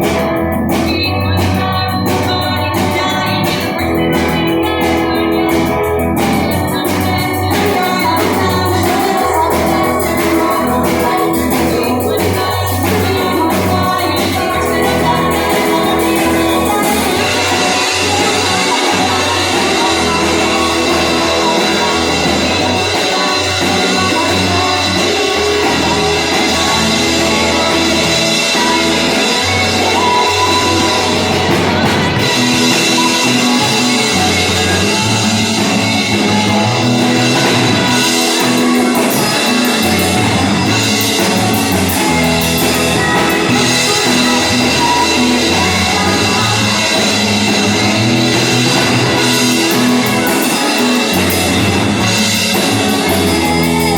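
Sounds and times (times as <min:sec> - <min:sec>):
drum kit: 0:00.0 - 0:53.9
electric guitar: 0:00.0 - 0:53.9
rock band playing live: 0:00.0 - 0:53.9.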